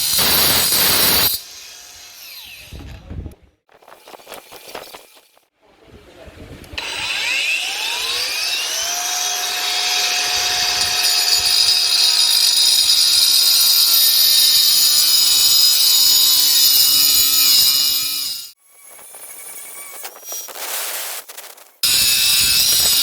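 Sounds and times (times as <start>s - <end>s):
angle grinder whine: 6.8s - 20.8s.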